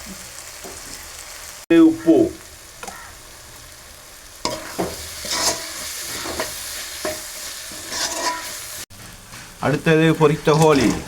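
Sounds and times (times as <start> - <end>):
food sizzling in oil: 0.0 - 11.0
spatula scraping pan: 4.4 - 9.6.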